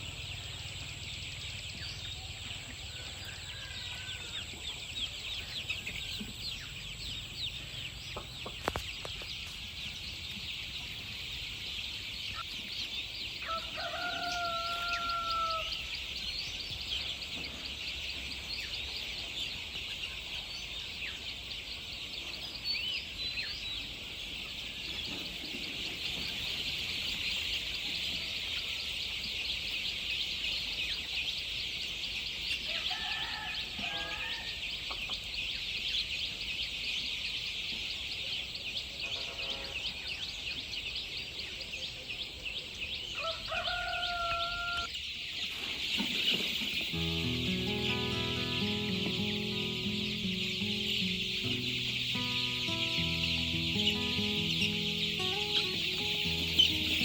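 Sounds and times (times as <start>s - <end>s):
chicks peeping: 0.0s - 57.0s
rooster crowing: 2.2s - 4.7s, 13.4s - 15.9s, 32.7s - 34.7s, 43.2s - 44.9s.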